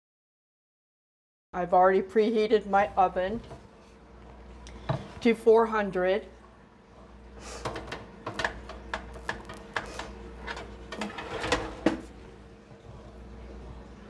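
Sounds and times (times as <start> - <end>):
steady low hum: 1.6 - 14.0
appliance clicks and knocks: 7.6 - 12.2.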